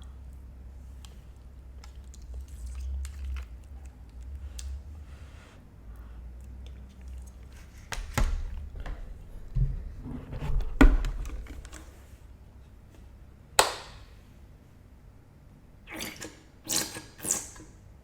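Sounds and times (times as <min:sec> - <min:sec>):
soft handling noise: 0:06.9 - 0:13.2.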